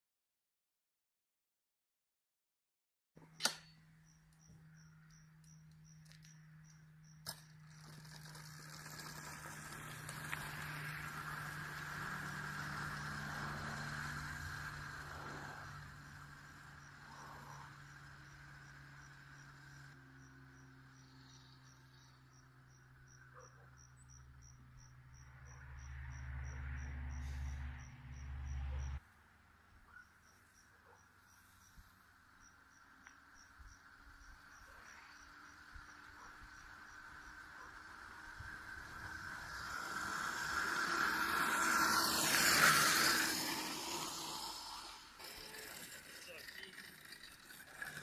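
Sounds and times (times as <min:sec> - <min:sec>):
electric mini bike whine: 0:03.5 - 0:29.0, 0:31.4 - 0:48.0
crickets chirping: 0:03.9 - 0:08.0, 0:10.6 - 0:29.0, 0:29.9 - 0:45.7.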